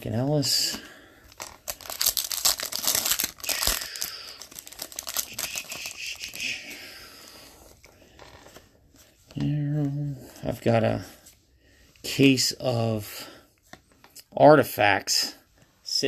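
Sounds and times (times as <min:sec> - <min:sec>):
foil wrapper tearing and crinkling: 0:01.4 - 0:06.5.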